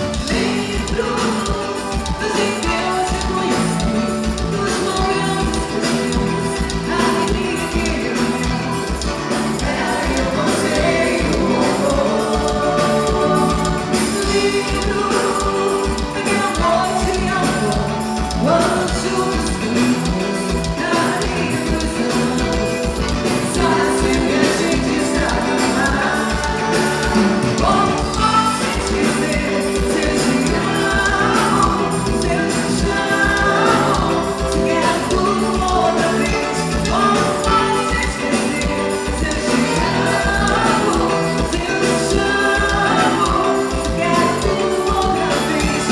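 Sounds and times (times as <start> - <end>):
band playing song with vocals: 0.0 - 45.9.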